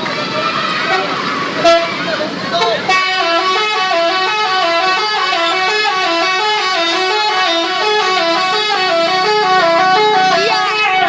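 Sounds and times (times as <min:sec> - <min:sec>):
multi-tone air horn playing tune: 0:02.9 - 0:11.0.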